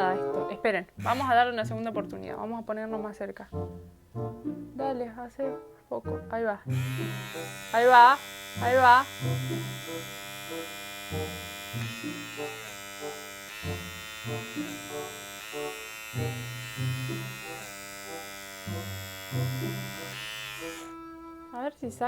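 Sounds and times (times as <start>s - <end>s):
electric buzz of pore vacuum: 1.0s - 1.8s, 6.7s - 22.0s.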